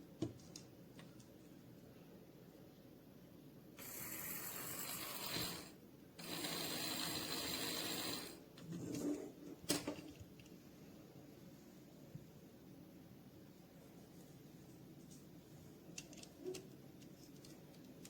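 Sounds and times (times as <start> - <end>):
toy blender running: 3.8 - 8.4.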